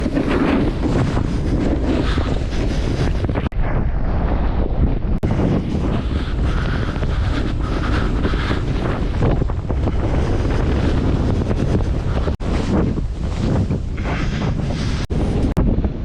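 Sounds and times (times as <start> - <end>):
wind buffeting microphone: 0.0 - 16.0
heavy breathing: 5.7 - 12.7.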